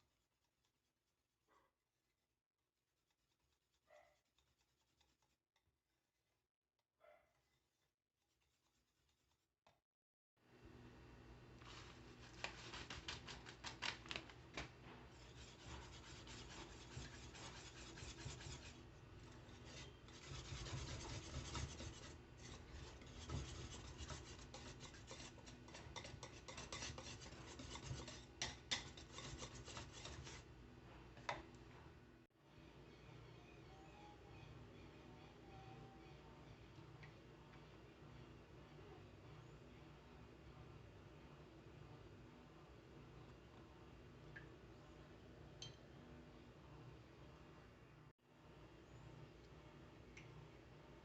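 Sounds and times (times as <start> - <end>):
utensil scraping cookware: 15.1 - 30.5.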